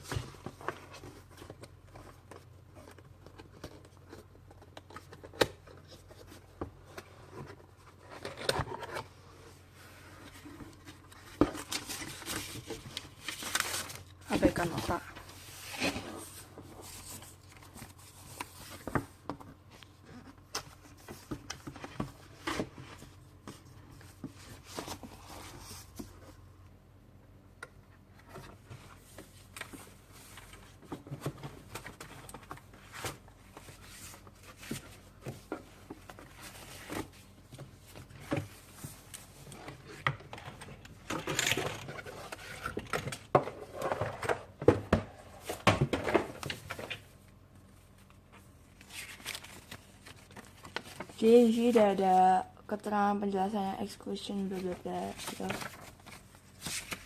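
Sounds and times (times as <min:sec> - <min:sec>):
handling cardboard box packaging: 0:10.0 - 0:26.5, 0:54.5 - 0:57.0.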